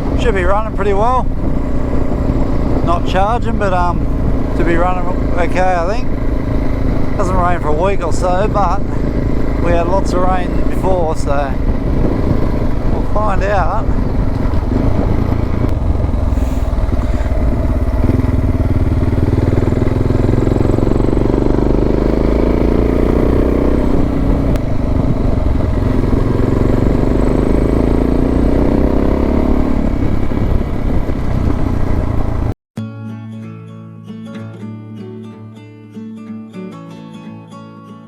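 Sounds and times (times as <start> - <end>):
motorcycle engine running: 0.0 - 32.6
acoustic guitar music: 32.8 - 38.0.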